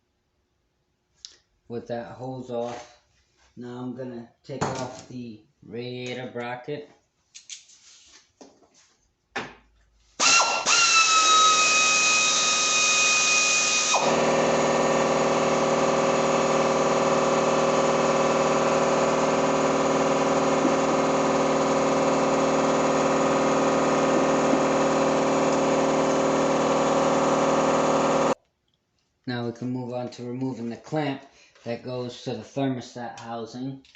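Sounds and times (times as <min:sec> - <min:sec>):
power drill running: 0:10.2 - 0:28.4.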